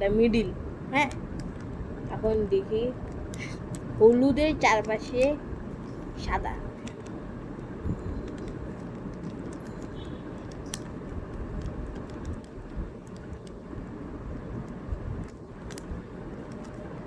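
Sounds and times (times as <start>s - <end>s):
low background rumble: 0.0s - 17.0s
plastic puzzle cube clicks: 1.0s - 1.8s, 3.0s - 4.0s, 6.0s - 17.0s.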